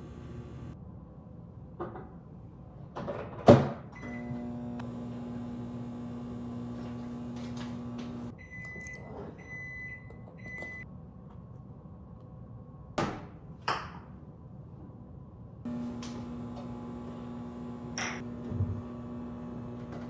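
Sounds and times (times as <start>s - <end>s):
microwave humming: 0.0s - 0.8s, 4.0s - 8.3s, 15.7s - 20.0s
microwave beeps: 4.0s - 5.1s, 8.0s - 10.8s.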